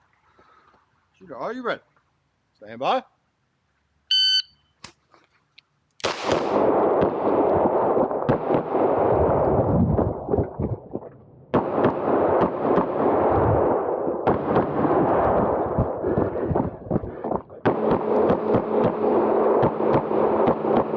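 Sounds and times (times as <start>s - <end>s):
shot timer beep: 4.1s - 4.7s
rapid pistol shots: 6.0s - 9.1s, 11.6s - 16.4s, 17.6s - 20.9s.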